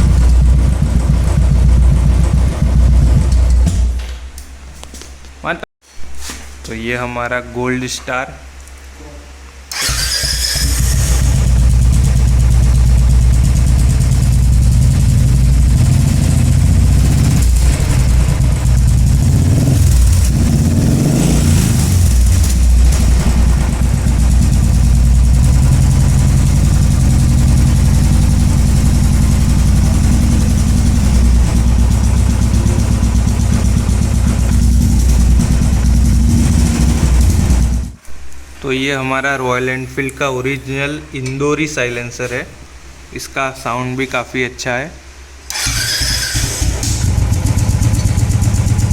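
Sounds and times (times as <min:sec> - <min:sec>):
motorcycle engine idling and revving: 0:00.0 - 0:03.9, 0:09.7 - 0:38.0, 0:45.5 - 0:48.9.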